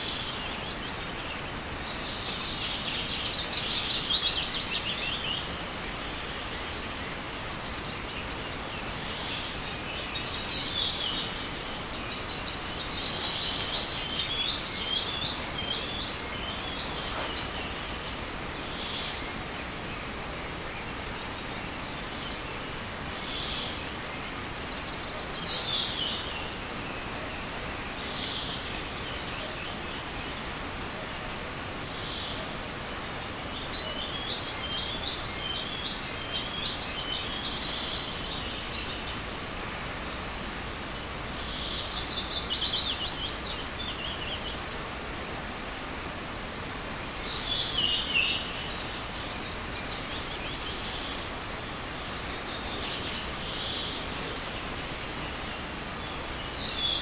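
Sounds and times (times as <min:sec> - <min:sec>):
songbirds singing: 0:00.0 - 0:31.2, 0:31.8 - 0:57.0
small river rushing: 0:00.0 - 0:57.0.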